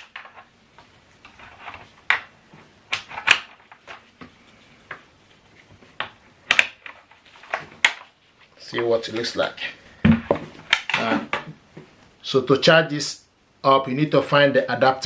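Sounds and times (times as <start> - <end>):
plastic parts clicking and knocking: 0.0 - 4.3, 6.0 - 8.1, 10.0 - 11.6.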